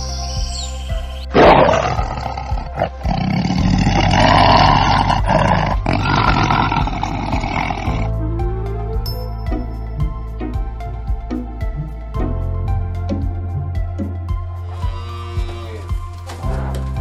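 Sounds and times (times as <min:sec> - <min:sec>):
background music: 0:00.0 - 0:17.0
loud rough animal call: 0:01.4 - 0:08.1.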